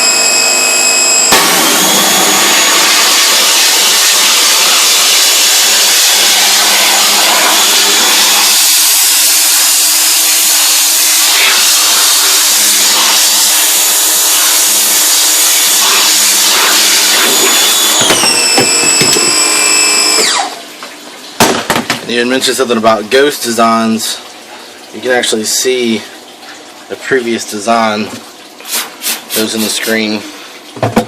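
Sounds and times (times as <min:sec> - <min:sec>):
pressure washer motor running: 0:00.0 - 0:20.6.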